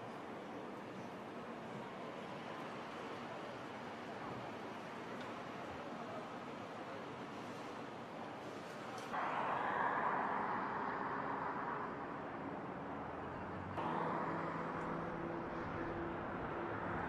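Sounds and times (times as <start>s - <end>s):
vehicle traffic: 9.1s - 17.0s.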